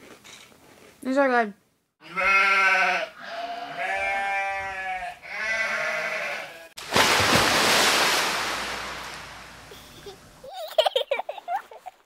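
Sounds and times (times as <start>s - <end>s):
sheep-like bleats: 2.0s - 6.8s.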